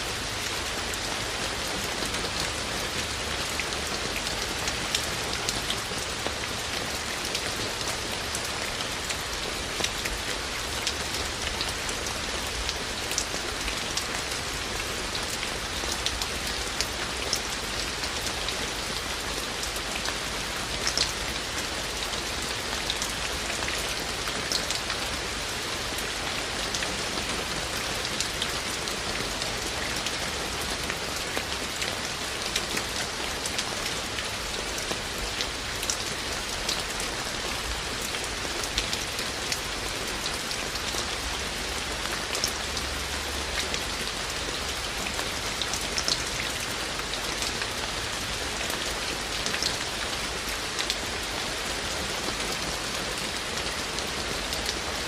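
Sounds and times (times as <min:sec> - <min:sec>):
raindrops ticking on surfaces: 0:00.0 - 0:55.0
steady rain hiss: 0:00.0 - 0:55.0.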